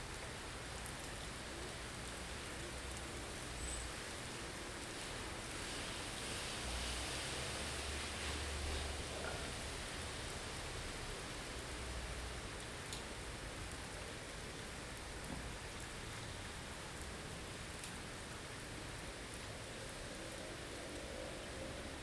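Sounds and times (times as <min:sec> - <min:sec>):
wind-driven snow hiss: 0:05.0 - 0:10.2.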